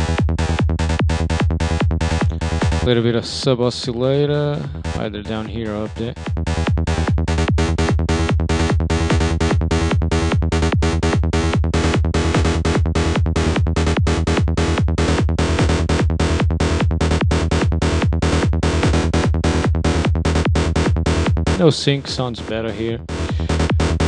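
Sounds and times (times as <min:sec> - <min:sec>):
synthesizer repeated short notes: 0:20.6 - 0:24.0.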